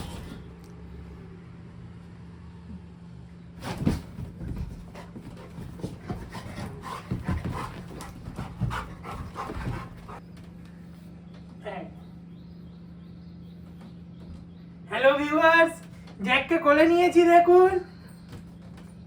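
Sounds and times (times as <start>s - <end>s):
dog panting and snuffling: 3.6s - 10.2s.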